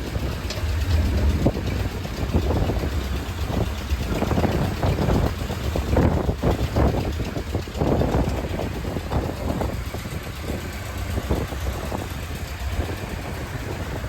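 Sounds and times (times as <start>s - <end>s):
boat engine rumbling: 0.0s - 14.0s.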